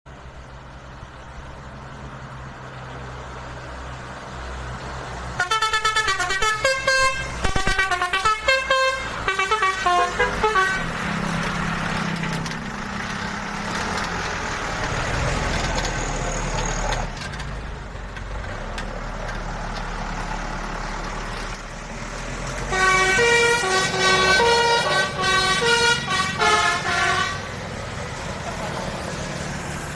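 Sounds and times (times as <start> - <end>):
bus engine rumble: 0.1 - 29.9
multi-tone musical bus horn: 5.3 - 11.3, 22.6 - 27.6.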